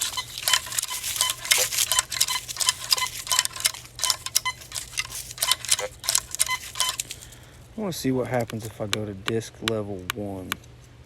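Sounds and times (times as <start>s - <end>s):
coil scratching on grass and dirt: 0.0s - 7.4s
metal detector tones: 0.0s - 7.4s.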